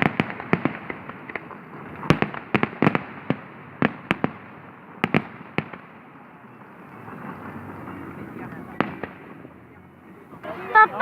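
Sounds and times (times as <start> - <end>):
fireworks bangs and cracks: 0.0 - 9.6.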